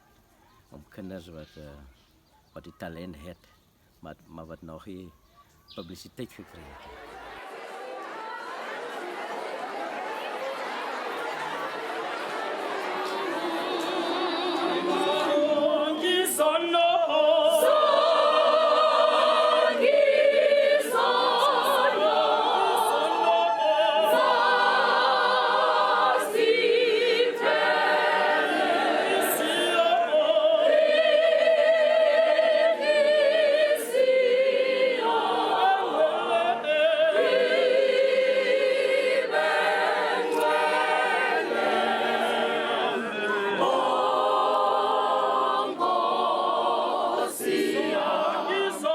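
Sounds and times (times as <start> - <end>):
choir singing: 6.8 - 48.9.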